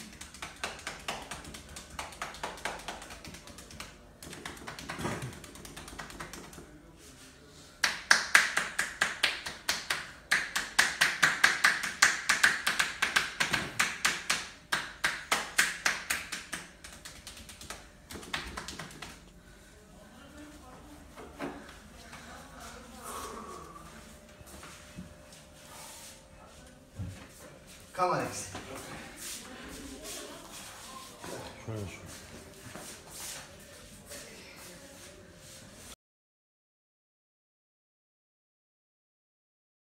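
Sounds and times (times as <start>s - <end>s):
hands tapping on body: 0.0s - 6.6s, 7.8s - 19.2s.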